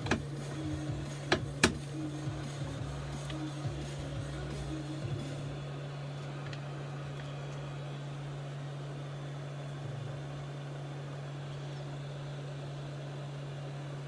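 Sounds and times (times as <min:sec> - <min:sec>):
fan-like hiss: 0:00.0 - 0:08.3
electrical hum: 0:00.0 - 0:14.0.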